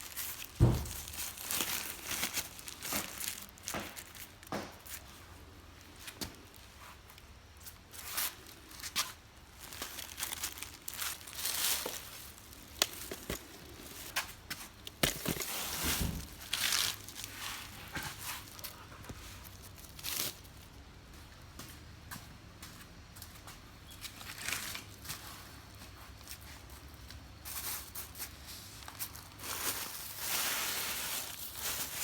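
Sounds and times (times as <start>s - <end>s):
material crinkling and rustling: 0.0s - 20.8s, 27.5s - 32.0s.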